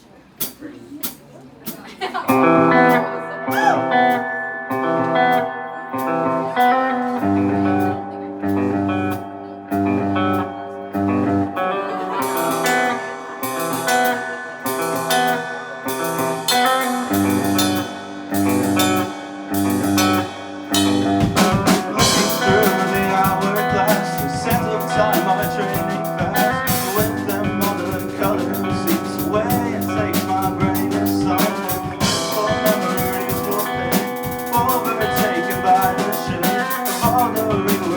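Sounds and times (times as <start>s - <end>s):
rock band playing: 1.6s - 37.9s
guitar and bass riff: 2.3s - 37.9s
drumming: 12.3s - 37.9s.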